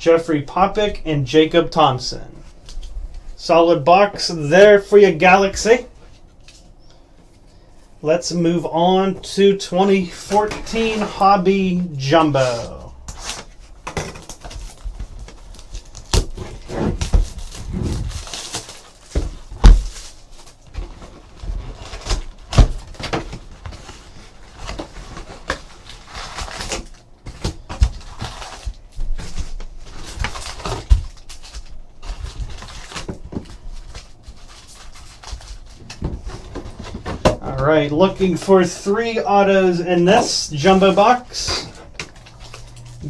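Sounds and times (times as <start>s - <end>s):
plastic wrapping crinkling: 12.4s - 43.0s.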